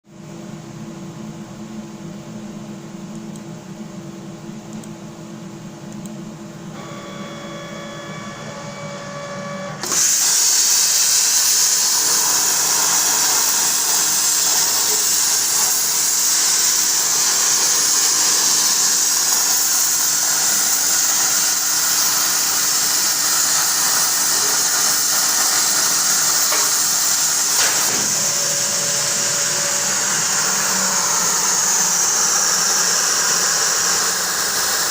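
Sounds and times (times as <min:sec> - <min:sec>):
cutting table humming with tones: 0:00.1 - 0:34.9
plasma torch hissing: 0:09.8 - 0:34.9.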